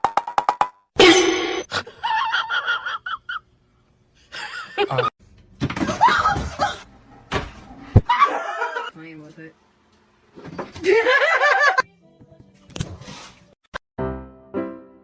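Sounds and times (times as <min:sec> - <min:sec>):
people laughing: 0:04.3 - 0:05.1, 0:08.1 - 0:08.9, 0:10.8 - 0:11.8.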